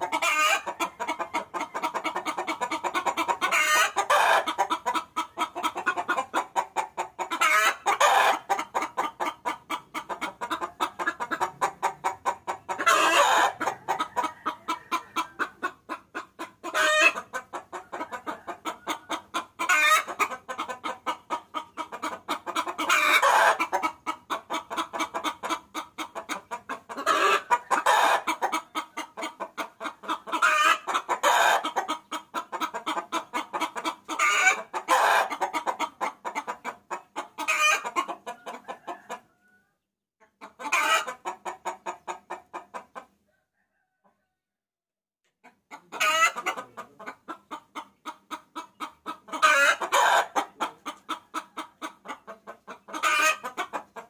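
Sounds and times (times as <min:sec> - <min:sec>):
hen clucking: 0:00.0 - 0:44.4, 0:45.3 - 0:54.0
hen drawn-out call: 0:11.4 - 0:15.7.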